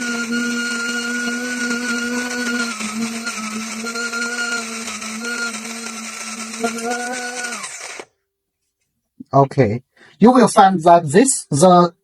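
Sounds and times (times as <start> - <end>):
electric coffee grinder running: 0.0 - 8.1.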